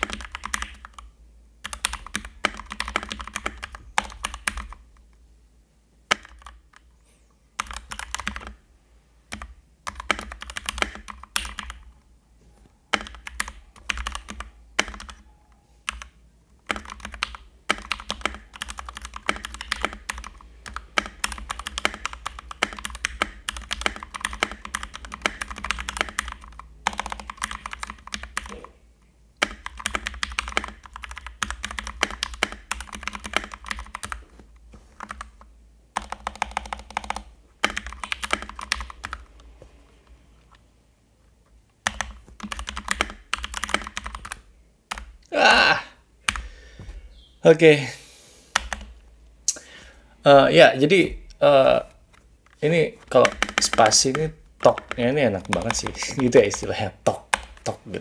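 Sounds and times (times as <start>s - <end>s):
mechanical keyboard typing: 0.0s - 5.0s, 6.1s - 6.9s, 7.6s - 8.6s, 9.3s - 11.9s, 12.9s - 15.2s, 15.8s - 28.8s, 29.4s - 34.3s, 35.0s - 39.4s, 41.8s - 45.2s, 48.6s - 48.9s, 52.1s - 56.7s.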